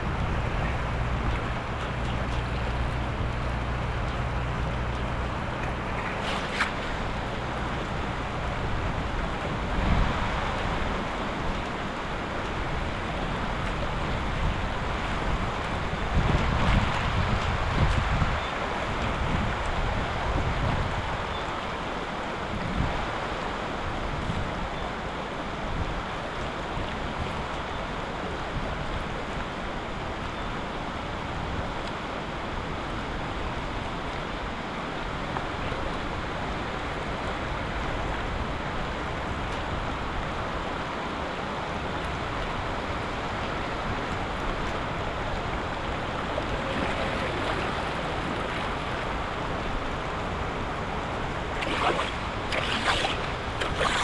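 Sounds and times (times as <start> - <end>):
floodwater rushing: 0.0 - 19.0, 35.1 - 54.0.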